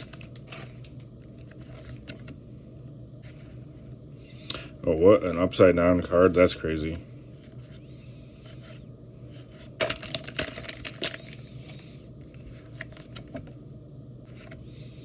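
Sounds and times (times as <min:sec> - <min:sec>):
cards crackling and clicking: 0:00.0 - 0:02.4, 0:09.6 - 0:13.5
cards rustling: 0:00.0 - 0:02.4, 0:09.4 - 0:13.5.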